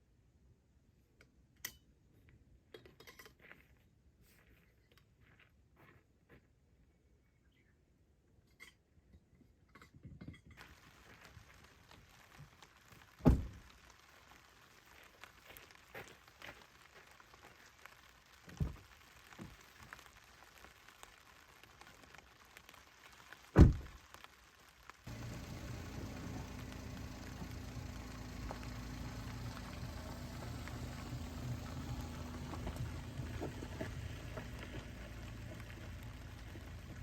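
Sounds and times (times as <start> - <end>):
faint steady hiss: 10.6 - 37.0.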